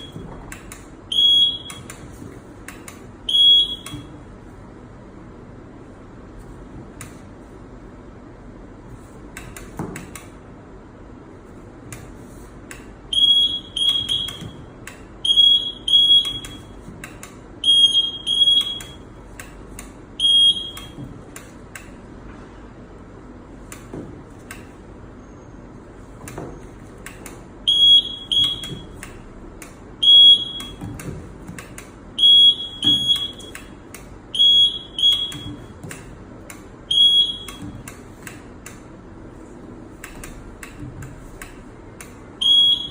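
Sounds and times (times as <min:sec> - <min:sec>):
high-pitched buzzer beeps: 0:01.1 - 0:02.0, 0:03.3 - 0:04.1, 0:13.1 - 0:16.8, 0:17.6 - 0:19.2, 0:20.2 - 0:21.0, 0:27.7 - 0:29.0, 0:30.0 - 0:31.0, 0:32.2 - 0:35.8, 0:36.9 - 0:37.9, 0:42.4 - 0:42.9.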